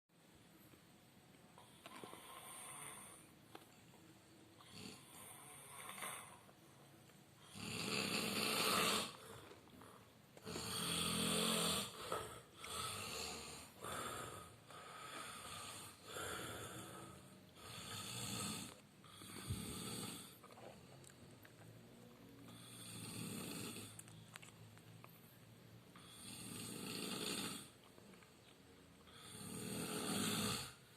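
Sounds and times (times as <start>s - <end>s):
person snoring: 1.8s - 3.3s, 4.6s - 6.5s, 7.4s - 20.5s, 22.5s - 24.0s, 26.0s - 27.8s, 29.1s - 30.8s.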